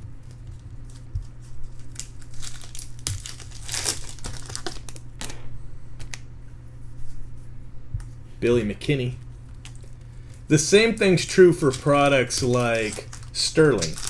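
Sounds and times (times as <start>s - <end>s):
foil wrapper crinkling and tearing: 0.2s - 5.1s, 9.6s - 14.0s.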